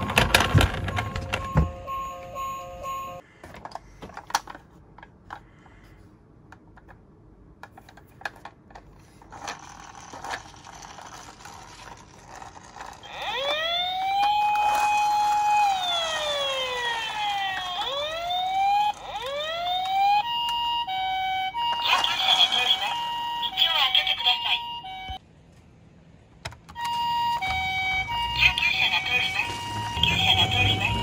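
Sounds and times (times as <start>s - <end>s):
toy siren wailing: 0.0s - 3.2s, 10.7s - 25.2s, 26.8s - 31.0s.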